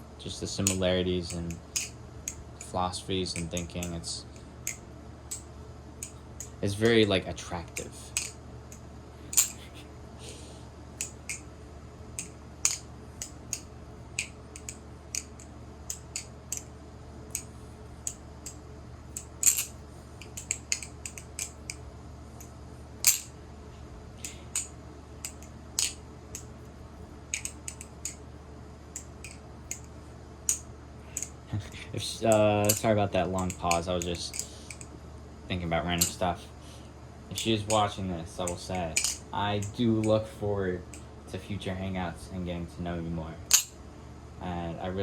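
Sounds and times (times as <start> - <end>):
faint low hum: 0.0 - 45.0
butterfly knife metallic clicks: 7.8 - 9.6, 12.2 - 16.7, 27.3 - 28.2, 32.3 - 34.9.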